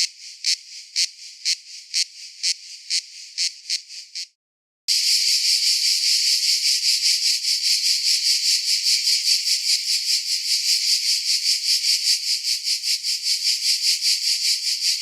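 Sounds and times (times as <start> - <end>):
cicadas buzzing: 4.9 - 15.0.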